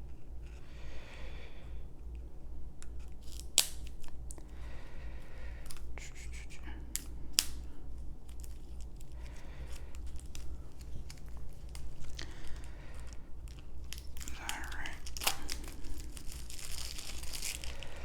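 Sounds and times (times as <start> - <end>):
plastic shrink wrap tearing: 3.1 - 4.2, 8.2 - 18.0.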